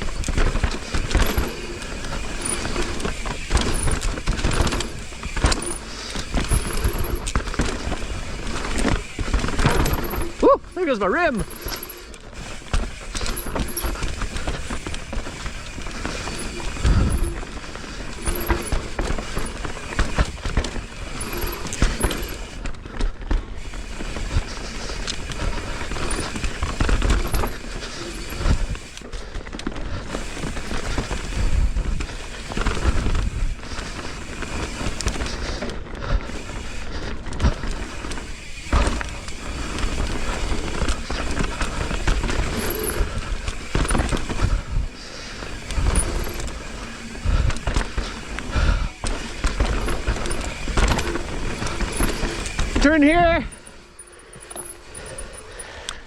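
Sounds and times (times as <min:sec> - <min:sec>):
bike thumping over bumps: 0:00.0 - 0:10.5, 0:11.4 - 0:54.0
bike tyres on dirt rattling: 0:00.0 - 0:56.0.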